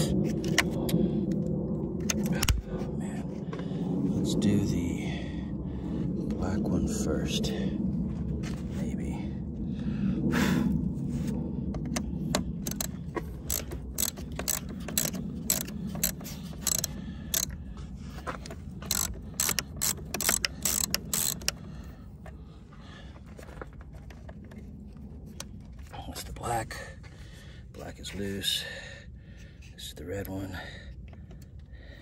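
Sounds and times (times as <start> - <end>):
socket ratchet clicking: 11.9 - 17.5, 18.4 - 21.6.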